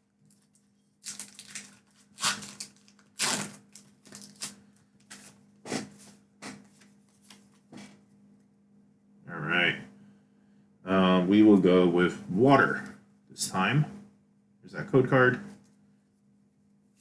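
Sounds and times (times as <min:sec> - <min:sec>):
foil wrappers crinkling: 0:00.3 - 0:05.4.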